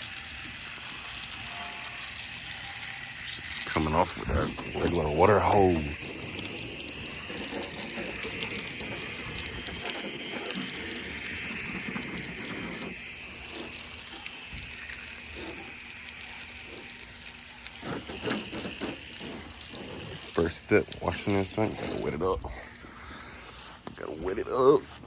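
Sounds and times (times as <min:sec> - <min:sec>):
hose spraying water: 0:00.0 - 0:25.0.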